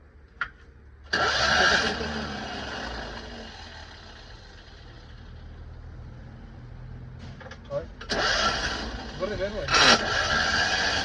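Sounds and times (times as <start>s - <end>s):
engine cranked by starter: 1.1s - 5.2s, 7.3s - 11.0s.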